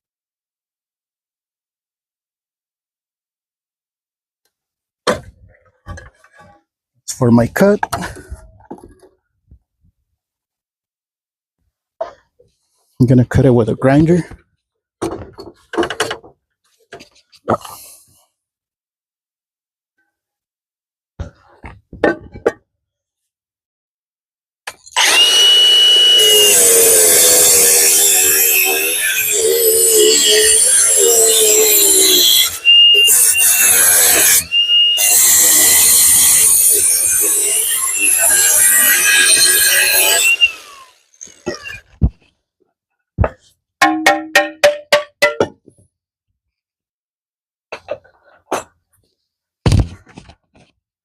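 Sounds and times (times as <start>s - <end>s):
angle grinder cutting tile: 24.7s - 42.1s
knocks on a ringing object: 43.8s - 45.6s.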